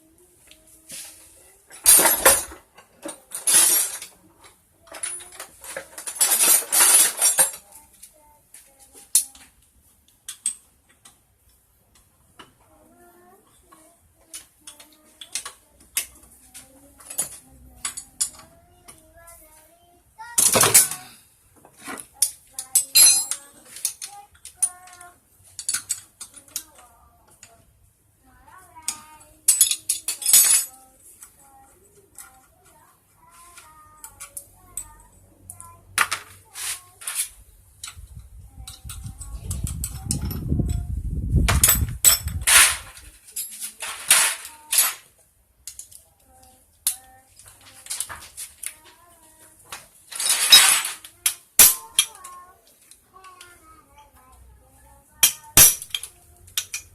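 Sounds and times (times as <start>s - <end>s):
metal tools clinking: 1.7s - 4.2s, 4.8s - 7.8s, 20.4s - 21.1s, 21.8s - 27.6s, 28.8s - 30.9s, 41.5s - 46.0s, 50.1s - 52.4s, 55.2s - 56.9s.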